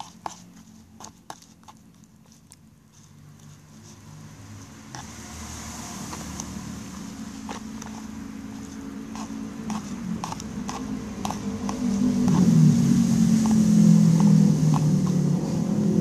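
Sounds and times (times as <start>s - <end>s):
slime being stirred: 0.0s - 16.0s
steady low hum: 3.6s - 16.0s
stirrer clicking against container: 6.0s - 6.7s, 7.4s - 12.6s, 13.3s - 15.4s.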